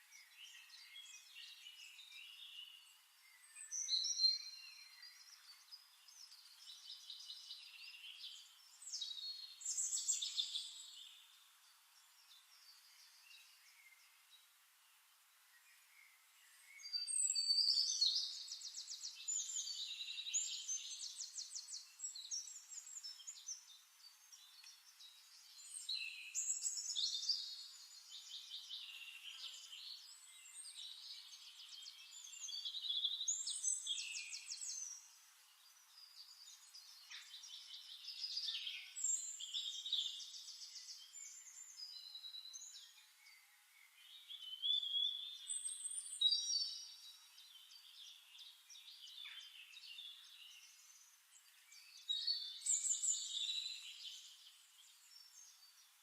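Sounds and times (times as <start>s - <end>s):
songbird trilling and chirping: 0.1s - 14.5s, 15.6s - 56.0s.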